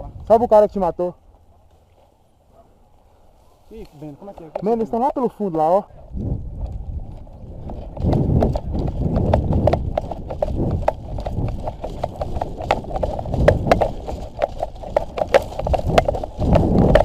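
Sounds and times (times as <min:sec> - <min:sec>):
footsteps crunching on dry brush: 0:01.2 - 0:05.1.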